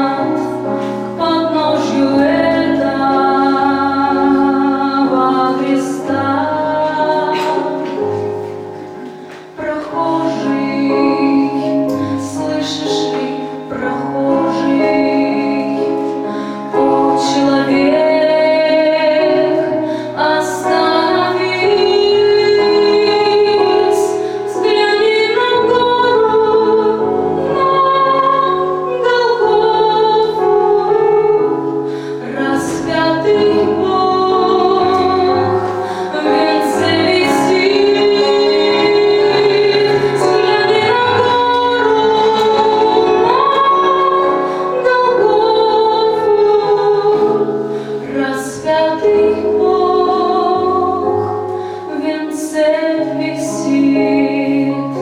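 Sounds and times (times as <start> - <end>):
woman singing: 0.0 - 8.4, 9.4 - 55.0
instrumental accompaniment: 0.0 - 55.0.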